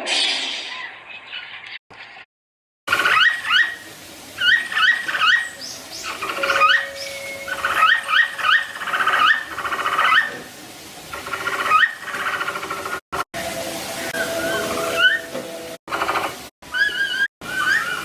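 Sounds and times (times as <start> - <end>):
animal squeaking: 6.1 - 10.4, 16.2 - 18.0.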